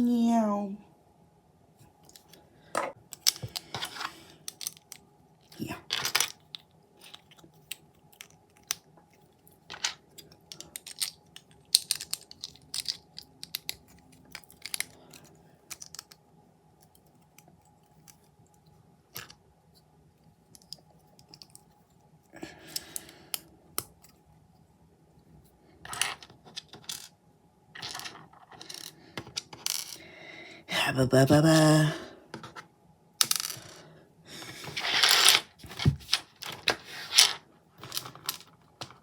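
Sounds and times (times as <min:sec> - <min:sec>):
plastic bricks clicking: 0:03.1 - 0:05.0, 0:09.7 - 0:16.2.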